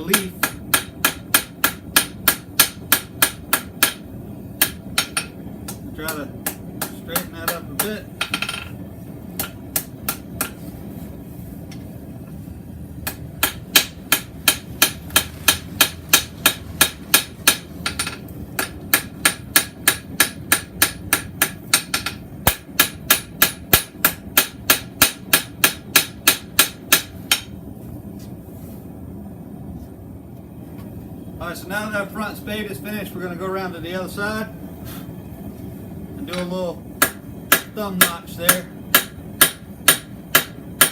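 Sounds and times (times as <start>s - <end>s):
hammer striking steel on anvil: 0.1s - 4.0s, 4.6s - 8.8s, 9.4s - 10.6s, 13.0s - 27.6s, 36.3s - 40.9s.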